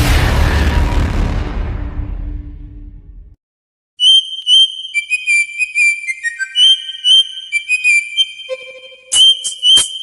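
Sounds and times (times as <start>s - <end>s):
low rumbling whoosh: 0.0s - 3.4s
electronic ringtone melody: 6.8s - 9.7s.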